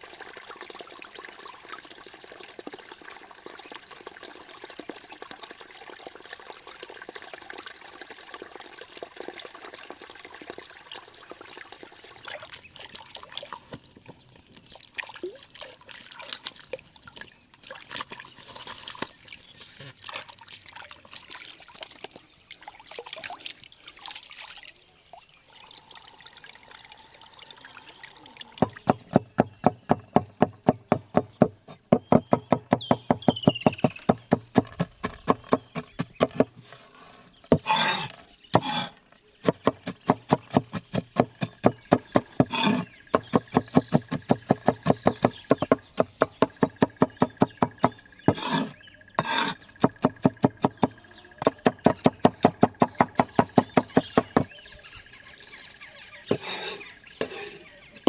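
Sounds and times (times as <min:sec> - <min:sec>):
water pouring: 0:00.0 - 0:28.9, 0:42.4 - 0:43.0.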